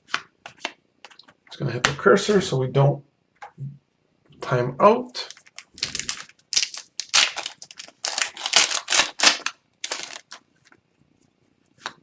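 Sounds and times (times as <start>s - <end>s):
cards and foil wrapper crinkling: 5.2s - 10.4s.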